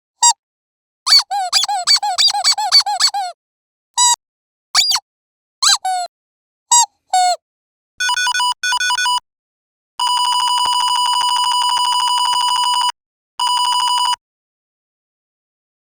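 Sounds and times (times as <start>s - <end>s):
toy telephone ringing: 8.0s - 9.2s, 10.0s - 14.2s.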